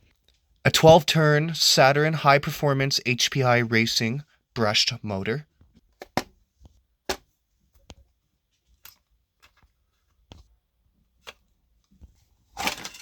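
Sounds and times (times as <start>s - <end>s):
small handling clicks and knocks: 5.7s - 10.5s.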